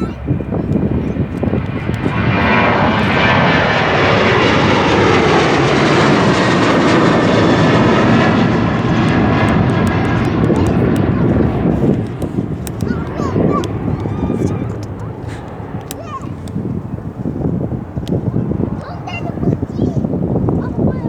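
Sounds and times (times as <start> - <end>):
jet engines roaring: 0.0 - 21.0.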